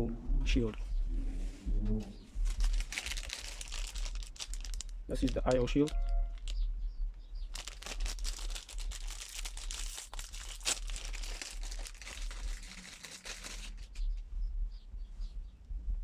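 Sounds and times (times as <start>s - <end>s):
plastic packaging crinkling: 2.4s - 6.6s, 7.5s - 14.0s.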